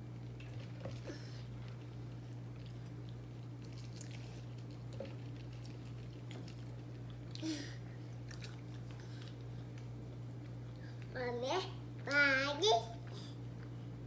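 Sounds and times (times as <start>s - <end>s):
person chewing food: 0.0s - 11.1s
steady low hum: 0.0s - 14.0s.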